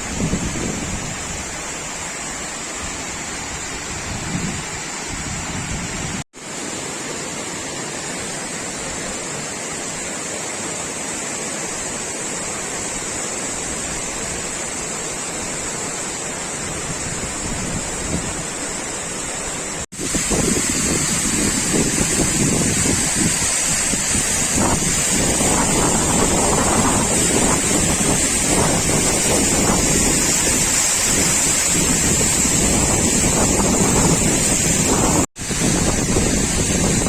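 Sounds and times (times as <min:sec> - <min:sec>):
waterfall roaring: 0:00.0 - 0:37.0.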